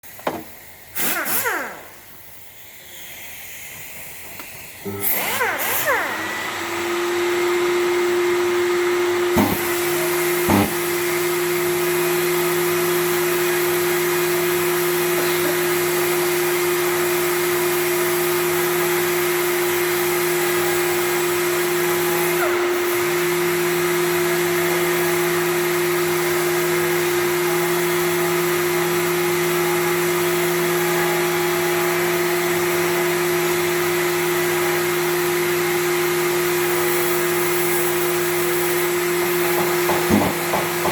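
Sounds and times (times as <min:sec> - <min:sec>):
power sander humming: 0:04.8 - 0:14.2, 0:38.2 - 0:40.9
sharp knocks: 0:39.6 - 0:40.9.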